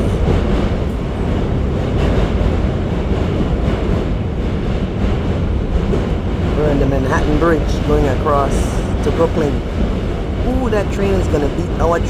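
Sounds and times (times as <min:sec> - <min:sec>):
subway train wheels on rails: 0:00.0 - 0:12.0.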